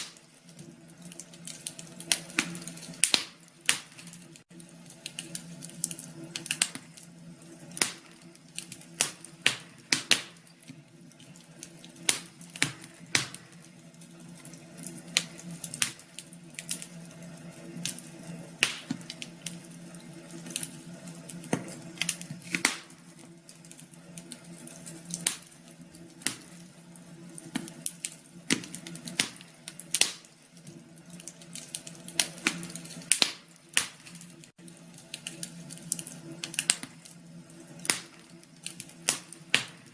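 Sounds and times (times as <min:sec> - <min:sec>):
wood fire crackling: 0:00.0 - 0:39.9
sharp pops and snaps: 0:01.2 - 0:04.4, 0:07.7 - 0:10.8, 0:11.7 - 0:13.6, 0:18.6 - 0:19.3, 0:21.4 - 0:23.0, 0:27.5 - 0:30.4, 0:31.5 - 0:34.3, 0:37.8 - 0:39.9.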